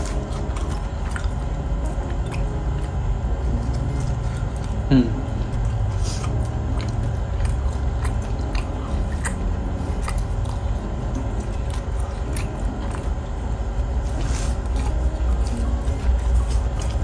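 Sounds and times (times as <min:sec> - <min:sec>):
person chewing with mouth clicks: 0:00.0 - 0:17.0
steady low rumble: 0:00.0 - 0:17.0.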